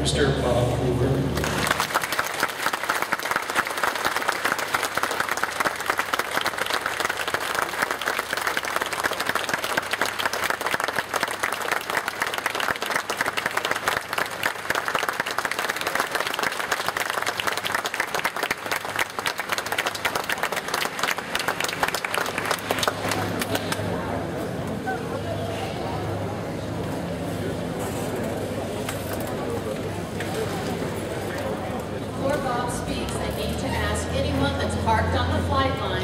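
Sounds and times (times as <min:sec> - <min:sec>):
crowd applauding: 0:01.3 - 0:24.3.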